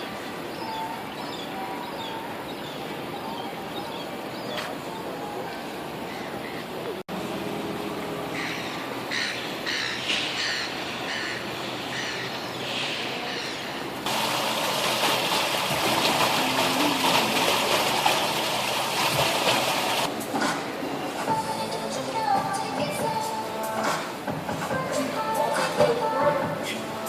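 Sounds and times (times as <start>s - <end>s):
water rushing: 14.0s - 20.2s.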